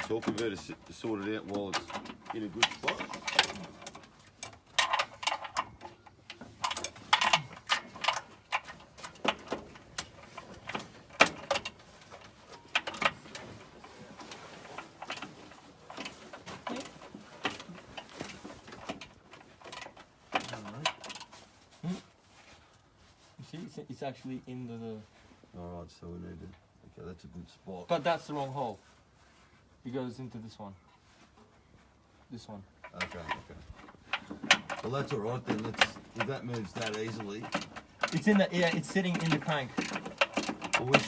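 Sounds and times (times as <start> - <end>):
metallic clicks and clunks of tools: 0.0 - 21.4, 32.8 - 41.0.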